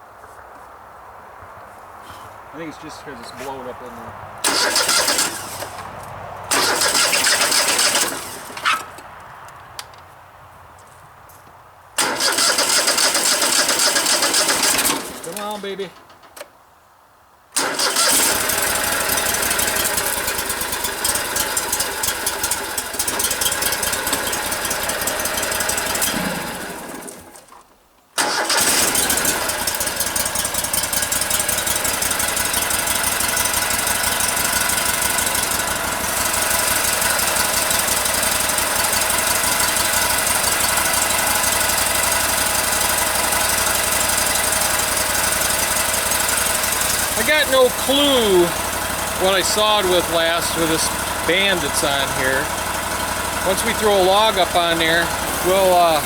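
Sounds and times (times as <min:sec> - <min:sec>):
gasoline engine running: 0:04.4 - 0:09.0, 0:12.0 - 0:15.7, 0:17.6 - 0:27.5, 0:28.2 - 0:56.0.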